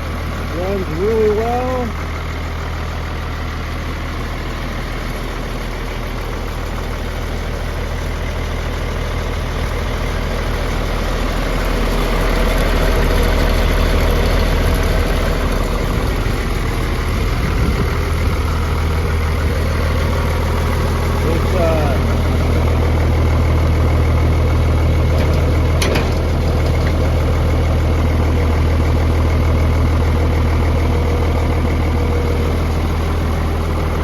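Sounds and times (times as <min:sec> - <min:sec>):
diesel engine humming: 0:00.0 - 0:34.0.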